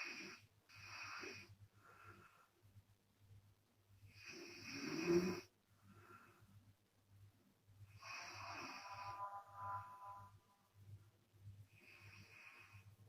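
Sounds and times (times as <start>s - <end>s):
quiet breath: 0.0s - 3.0s, 4.0s - 7.1s, 7.7s - 10.8s, 11.4s - 13.0s
woman snoring with lips flapping: 4.1s - 5.5s, 8.0s - 9.4s.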